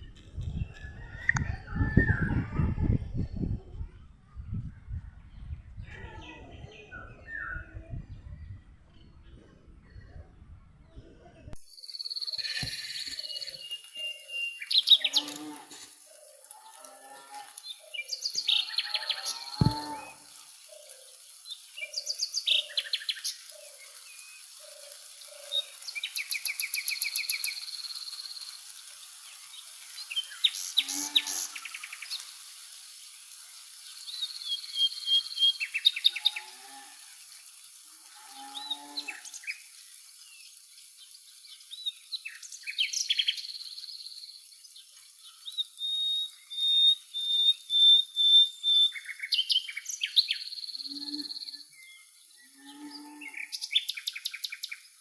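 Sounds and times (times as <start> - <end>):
wild birds singing: 11.7 - 55.0.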